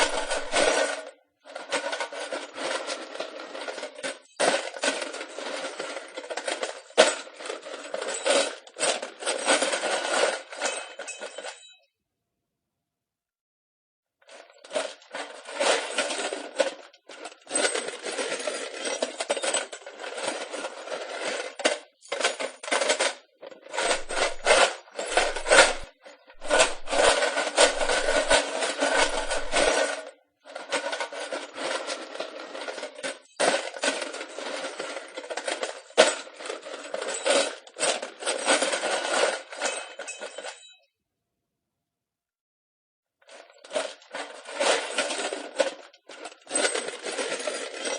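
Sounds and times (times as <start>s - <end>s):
wood scraping: 0.0s - 0.7s, 23.7s - 29.9s
wood pieces clattering: 0.0s - 1.0s, 18.7s - 30.0s.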